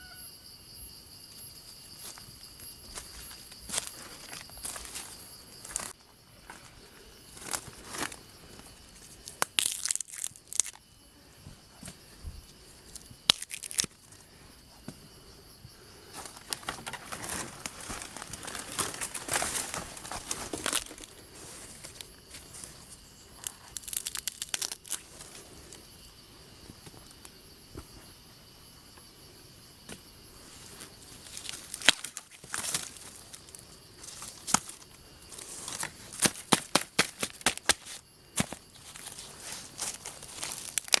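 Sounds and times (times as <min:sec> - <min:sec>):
leaves and stalks rustling: 0:02.0 - 0:06.7, 0:16.2 - 0:25.8, 0:30.4 - 0:41.0
plant stalks snapping: 0:09.4 - 0:10.8, 0:13.3 - 0:13.9, 0:23.8 - 0:25.0, 0:31.4 - 0:33.2, 0:34.0 - 0:39.2, 0:39.8 - 0:41.0.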